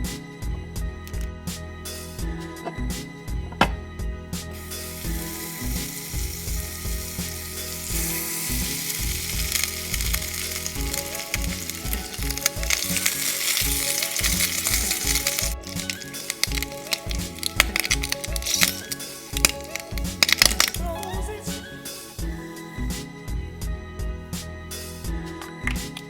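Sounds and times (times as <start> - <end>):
background music with steady beat: 0.0 - 26.0
food sizzling in a frying pan: 4.6 - 20.8.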